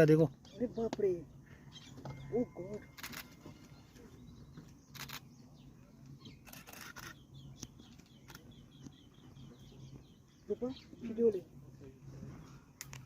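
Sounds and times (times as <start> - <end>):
faint small bird chirps: 1.7 - 11.1.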